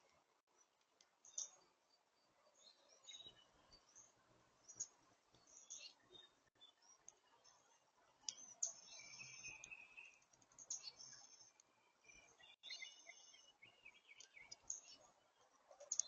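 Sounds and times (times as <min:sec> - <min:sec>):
songbird chirping: 0:00.0 - 0:16.0.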